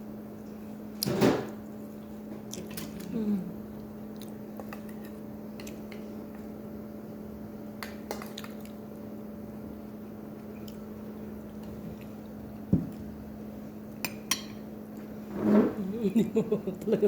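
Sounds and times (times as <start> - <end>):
steady low hum: 0.0 - 17.0
soft eating mouth sounds: 1.8 - 6.5, 10.4 - 12.6.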